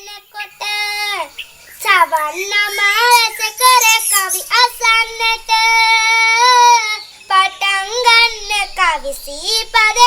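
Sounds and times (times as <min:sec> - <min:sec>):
high voice singing folk song: 0:00.0 - 0:10.0.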